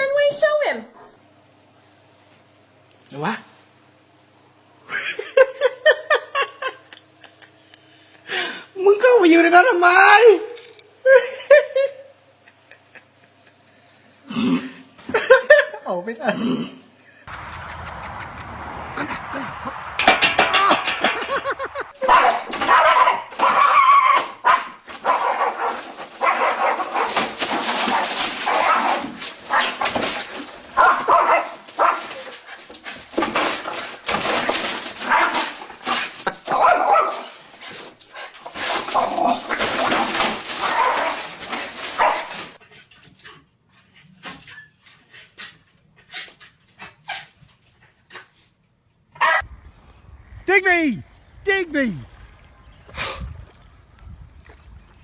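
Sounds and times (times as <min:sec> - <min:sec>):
dog barking and whining: 0:22.0 - 0:29.9, 0:30.8 - 0:32.5, 0:35.0 - 0:35.6, 0:36.4 - 0:37.3, 0:40.6 - 0:41.3, 0:41.9 - 0:42.5, 0:49.2 - 0:49.5.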